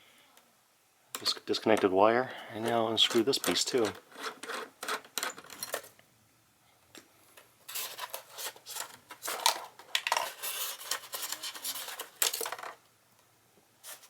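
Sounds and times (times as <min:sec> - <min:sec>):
metal lock parts clicking and scraping: 0:02.6 - 0:06.0.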